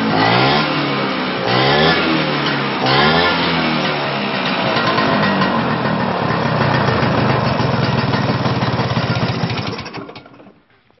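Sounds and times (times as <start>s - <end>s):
scooter engine running: 0.0s - 10.7s.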